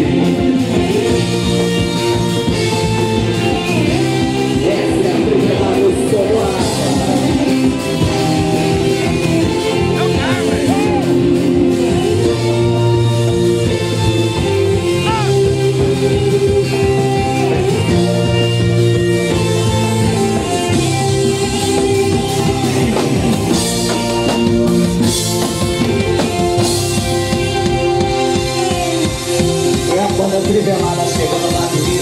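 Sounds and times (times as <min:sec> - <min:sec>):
electric guitar over held chords: 0:00.0 - 0:32.0
live band music: 0:00.0 - 0:32.0.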